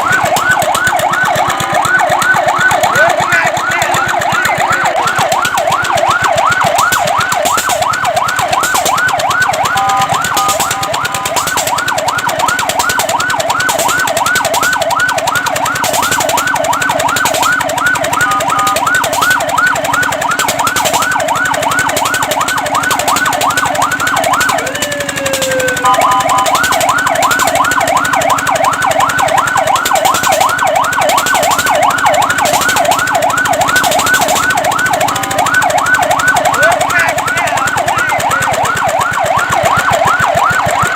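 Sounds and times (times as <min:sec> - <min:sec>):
fire truck siren yelping: 0:00.0 - 0:40.9.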